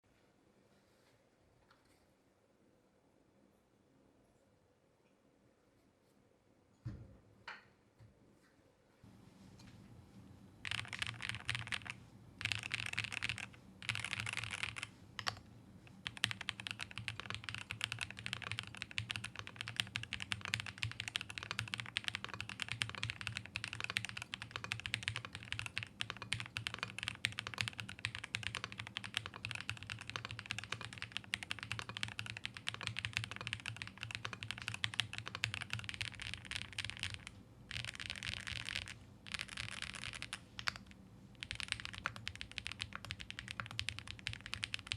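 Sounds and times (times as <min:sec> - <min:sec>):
mechanical keyboard typing: 0:10.6 - 0:44.9.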